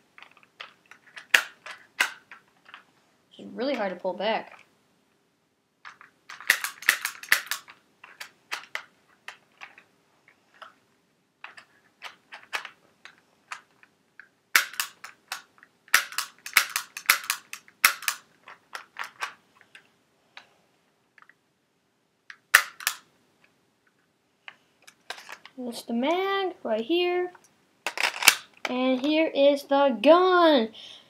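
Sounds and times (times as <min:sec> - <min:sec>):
sharp clicks and clacks of pistol: 0:00.2 - 0:02.8, 0:05.9 - 0:09.8, 0:11.4 - 0:19.4, 0:22.3 - 0:23.1, 0:27.8 - 0:28.7.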